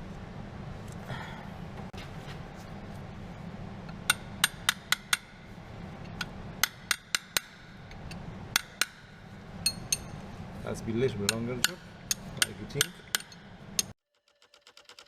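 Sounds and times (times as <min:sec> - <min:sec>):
hammer tapping metal: 0:03.9 - 0:05.5, 0:06.1 - 0:10.3, 0:11.0 - 0:14.0.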